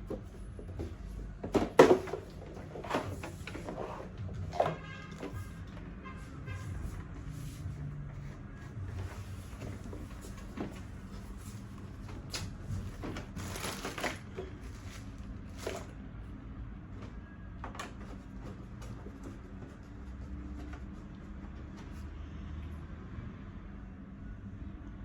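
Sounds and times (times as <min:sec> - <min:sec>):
plastic parts clicking and rattling: 0:12.2 - 0:15.9.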